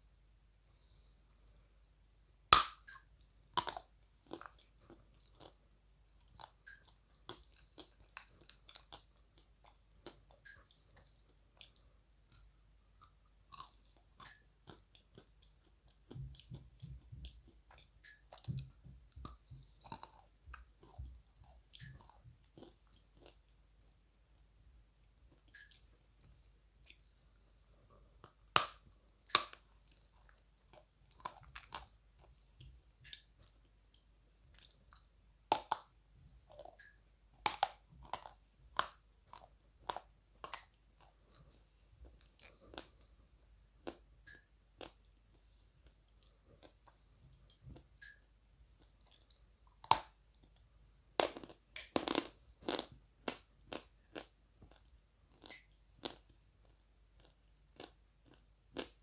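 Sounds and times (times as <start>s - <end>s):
sharp snap of biting: 2.6s - 2.8s
person chewing: 3.6s - 5.6s, 6.2s - 17.0s, 19.2s - 23.5s, 27.9s - 32.4s, 34.6s - 35.9s, 36.5s - 43.2s, 43.8s - 48.2s, 51.2s - 59.0s
chewing crunchy clay: 36.5s - 43.0s, 51.2s - 56.3s, 57.2s - 59.0s.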